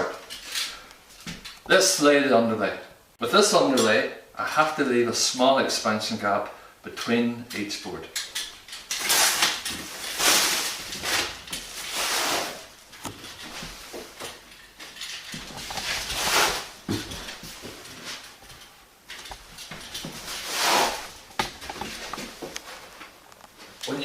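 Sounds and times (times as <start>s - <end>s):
panels scraping across wooden floor: 15.5s - 18.2s, 20.1s - 21.2s.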